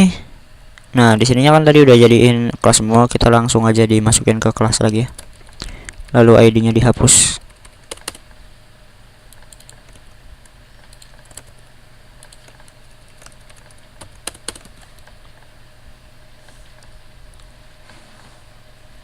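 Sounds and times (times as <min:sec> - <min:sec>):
faint steady hum: 0:00.0 - 0:19.0
computer keyboard clicks: 0:05.2 - 0:06.2, 0:07.5 - 0:08.2, 0:09.3 - 0:10.1, 0:10.8 - 0:11.6, 0:12.2 - 0:15.5.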